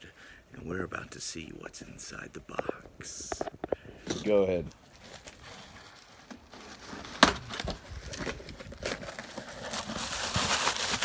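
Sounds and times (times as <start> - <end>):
packaging crinkling and tearing: 4.2 - 11.0
box snapping open: 4.9 - 11.0.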